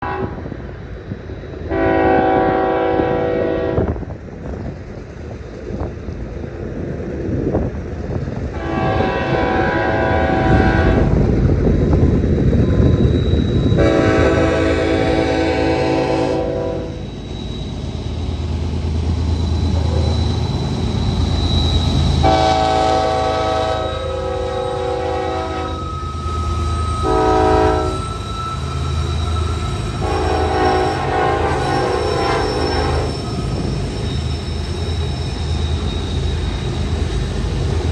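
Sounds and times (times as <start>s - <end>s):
freight train rumbling: 0.0s - 37.9s
train clanks: 0.0s - 37.9s
loud multi-tone shriek: 12.5s - 37.9s
thin high whine: 23.7s - 37.6s.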